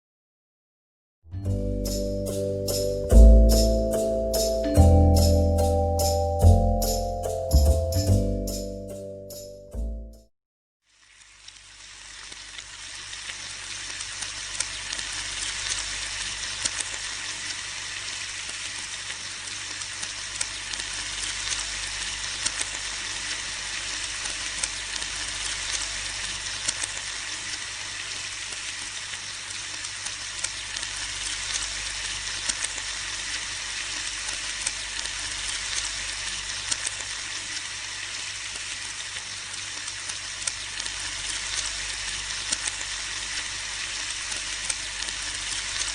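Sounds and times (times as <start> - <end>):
bacon sizzling in a pan: 10.9 - 45.9.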